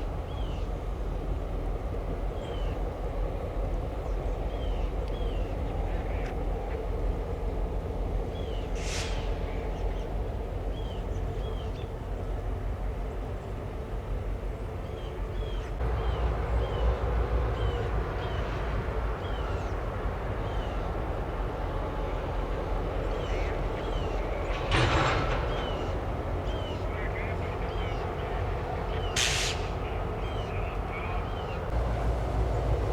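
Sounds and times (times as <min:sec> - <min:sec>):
diesel locomotives rumbling: 0:00.0 - 0:32.9.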